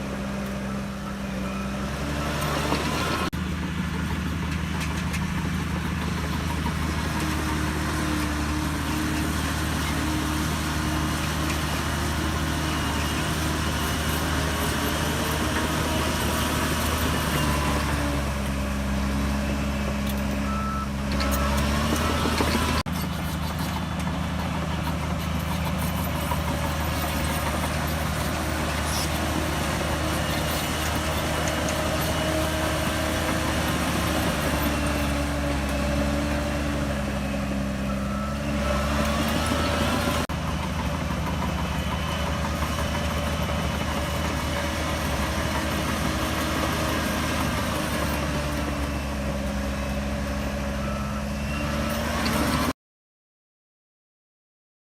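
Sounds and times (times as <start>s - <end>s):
bulldozer diesel engine working: 0.0s - 52.8s
reversing alarm beeping: 0.6s - 3.3s, 19.3s - 22.8s, 29.6s - 40.3s, 41.2s - 49.3s, 50.8s - 52.0s.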